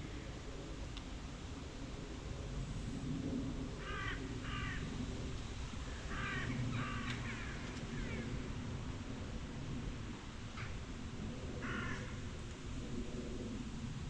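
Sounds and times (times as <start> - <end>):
crow cawing: 3.8 - 4.9, 6.0 - 8.2, 11.6 - 12.2.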